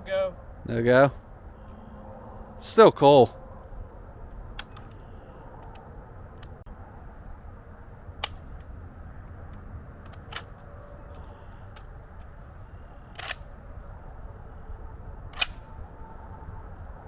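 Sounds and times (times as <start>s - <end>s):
low outdoor rumble: 0.0s - 17.0s
sharp mechanical clicks of firearm: 8.2s - 8.4s, 13.1s - 13.5s, 15.3s - 15.7s.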